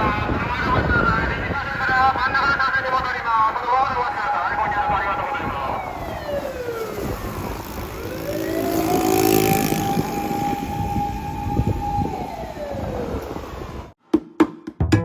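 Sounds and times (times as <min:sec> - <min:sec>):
vehicle and road noise: 0:00.0 - 0:14.0
siren wailing: 0:04.0 - 0:13.9.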